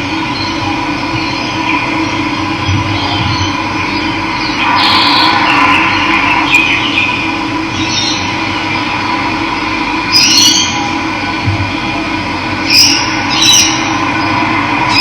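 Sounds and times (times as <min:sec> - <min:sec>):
wild birds chirping: 0:02.9 - 0:09.0, 0:12.6 - 0:15.0.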